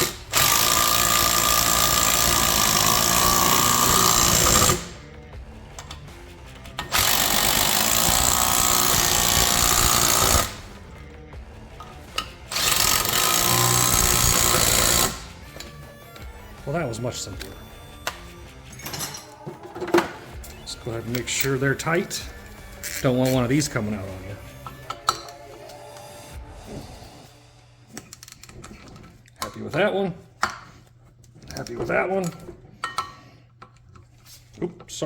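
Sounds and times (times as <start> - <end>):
impact wrench running bolts: 0.0 - 5.0, 5.7 - 10.7, 11.8 - 16.3, 19.8 - 25.4.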